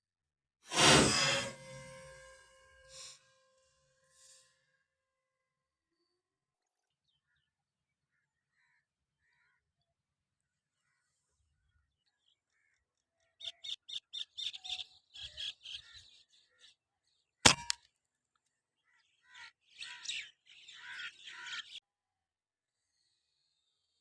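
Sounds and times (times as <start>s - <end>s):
small birds chirping: 13.2s - 17.2s, 19.4s - 21.8s
airgun shot: 17.5s - 17.8s.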